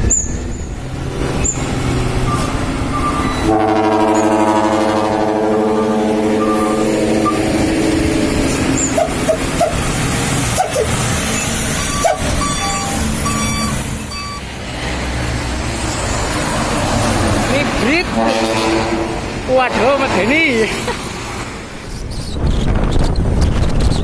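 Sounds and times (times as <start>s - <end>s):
truck engines rumbling: 0.0s - 24.0s
truck air horn: 3.2s - 9.8s, 18.0s - 19.9s
short high beeps: 11.4s - 14.4s.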